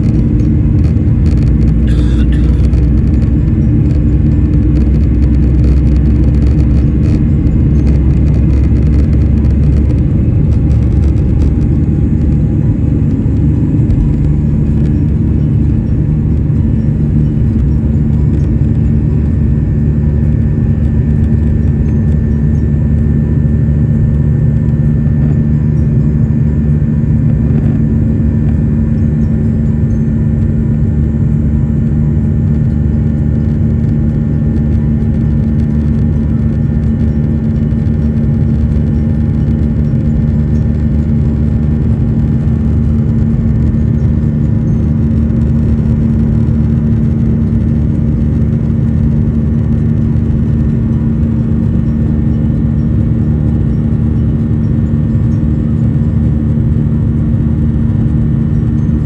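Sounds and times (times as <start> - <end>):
jet engines rumbling in cabin: 0.0 - 59.0.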